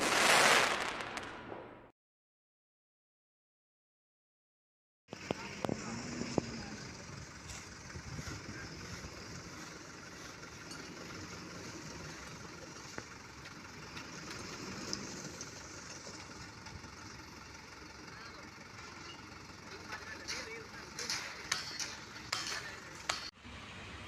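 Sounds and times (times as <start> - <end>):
engine idling: 5.1 - 24.0
sharp clicks and knocks: 19.8 - 23.3.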